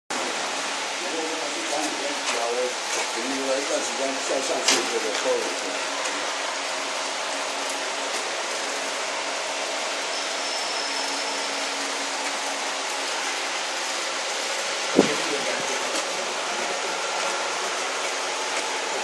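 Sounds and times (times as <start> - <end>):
sharp knock: 15.0 - 15.3.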